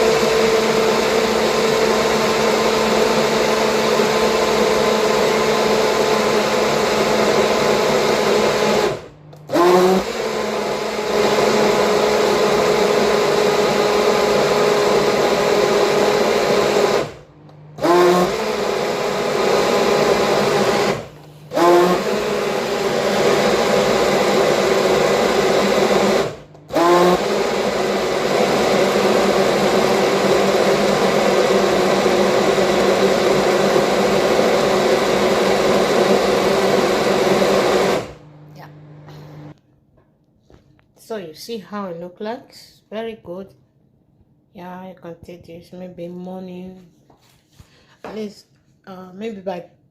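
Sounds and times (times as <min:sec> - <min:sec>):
electric blender running: 0:00.0 - 0:39.6.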